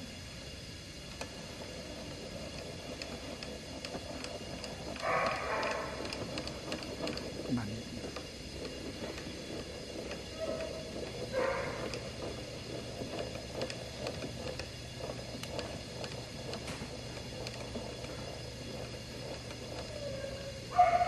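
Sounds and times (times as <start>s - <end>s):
low background hum: 0.0s - 21.0s.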